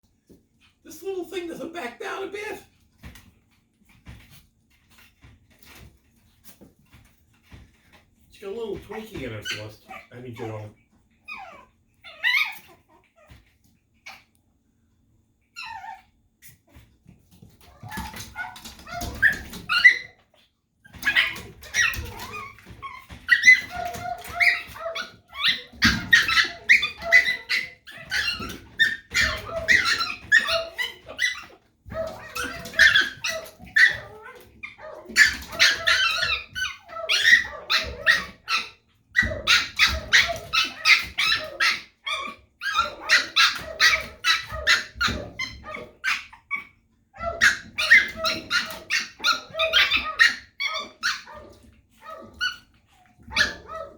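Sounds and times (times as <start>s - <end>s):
small dog barking: 23.3s - 46.2s.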